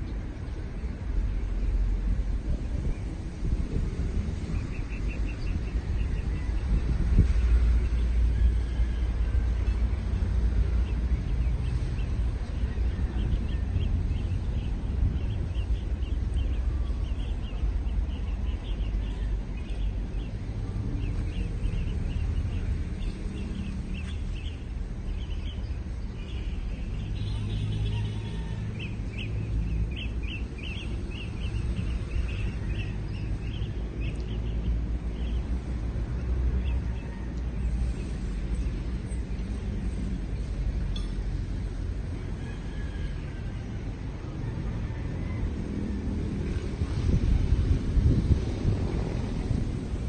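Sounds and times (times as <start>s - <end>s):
small birds chirping: 0.0s - 35.8s
low outdoor rumble: 0.0s - 50.0s.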